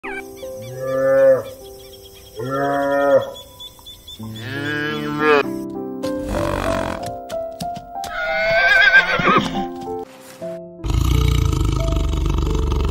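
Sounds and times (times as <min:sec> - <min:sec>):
light background music: 0:00.0 - 0:12.9
cow mooing: 0:00.6 - 0:01.6, 0:02.4 - 0:03.4, 0:04.3 - 0:05.5, 0:06.2 - 0:07.1, 0:10.9 - 0:12.9.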